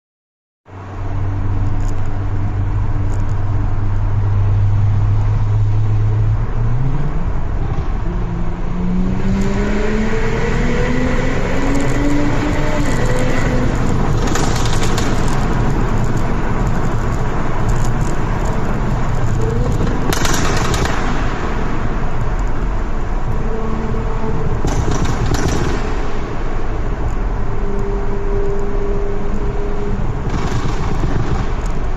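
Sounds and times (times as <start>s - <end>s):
car engine accelerating: 2.4s - 27.5s.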